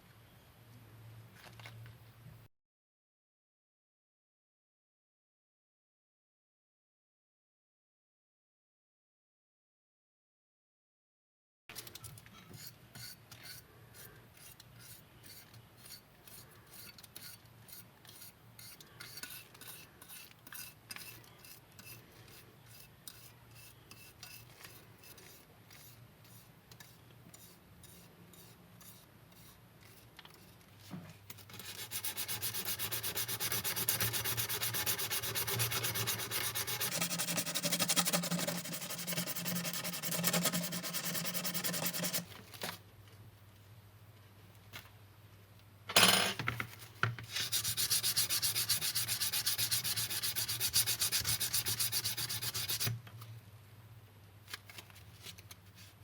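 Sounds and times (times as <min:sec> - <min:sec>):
continuous sanding: 0:31.5 - 0:42.3, 0:47.3 - 0:52.9
sanding strokes: 0:31.5 - 0:42.3, 0:47.3 - 0:52.9.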